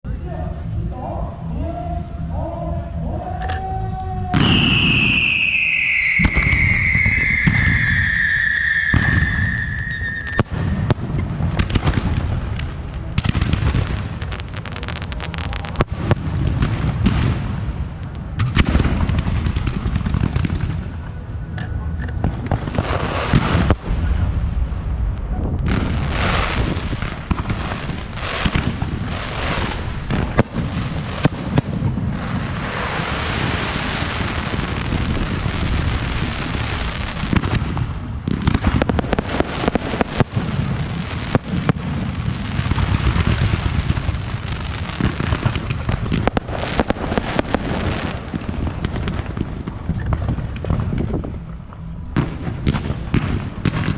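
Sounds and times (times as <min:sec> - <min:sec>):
firecrackers crackling and banging: 0:04.3 - 0:53.9
firework falling whistle: 0:04.4 - 0:10.9.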